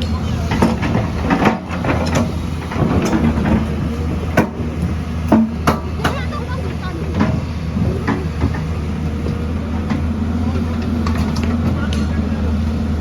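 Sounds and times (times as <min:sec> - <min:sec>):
sharp metallic knocks and clanks: 0:00.0 - 0:06.4
heavy machinery engine running: 0:00.0 - 0:13.0.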